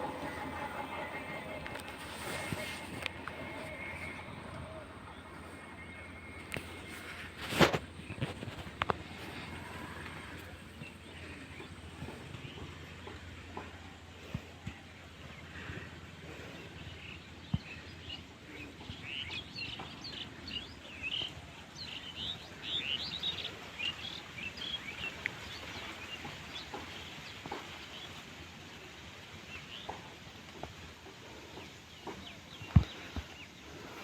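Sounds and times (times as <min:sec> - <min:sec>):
low background hum: 0:00.0 - 0:25.5.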